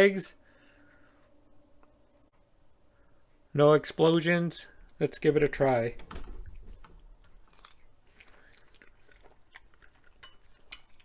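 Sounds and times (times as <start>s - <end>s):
person chewing food: 6.5s - 11.0s.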